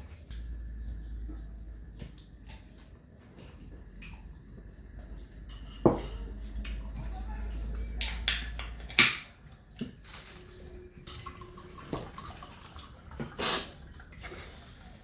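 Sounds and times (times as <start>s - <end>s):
bowls and dishes clattering: 5.2s - 10.3s.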